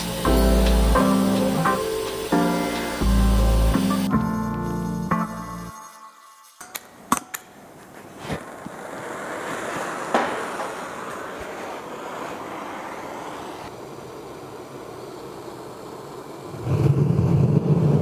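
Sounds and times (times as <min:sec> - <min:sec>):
steady rushing noise: 0:08.1 - 0:18.0.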